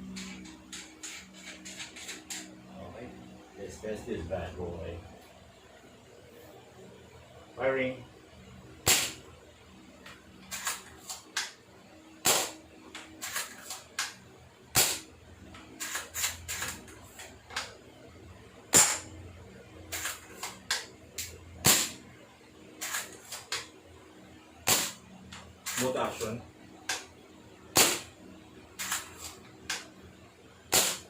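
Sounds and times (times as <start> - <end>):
airsoft rifle shots: 8.8 - 9.3, 12.2 - 12.6, 14.8 - 15.1, 18.7 - 19.1, 21.6 - 22.0, 24.7 - 25.0, 27.8 - 28.1, 30.7 - 31.0.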